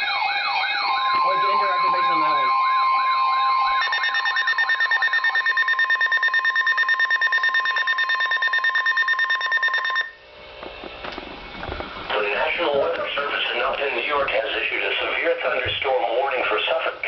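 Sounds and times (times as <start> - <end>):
siren wail: 0.0 - 10.1
electronic alarm beeping rapidly: 0.8 - 10.2.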